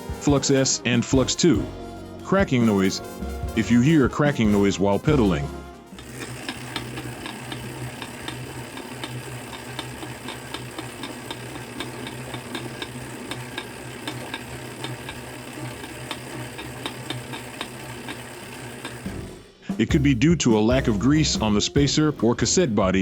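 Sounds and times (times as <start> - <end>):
bike trainer humming: 4.6 - 19.8.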